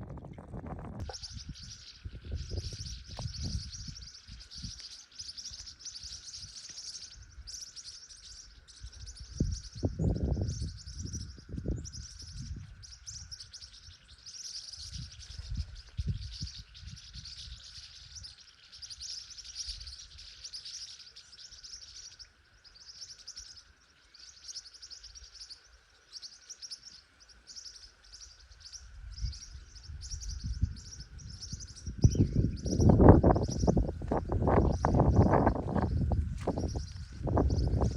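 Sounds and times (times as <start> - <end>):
low rumbles: 0.0 - 4.7
birds chirping: 0.0 - 37.9.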